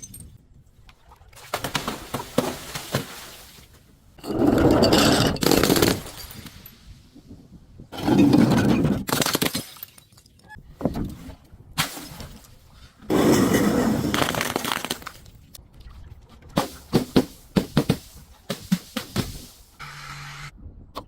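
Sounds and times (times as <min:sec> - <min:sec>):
glass bottles breaking: 0:04.3 - 0:06.7, 0:08.2 - 0:10.4.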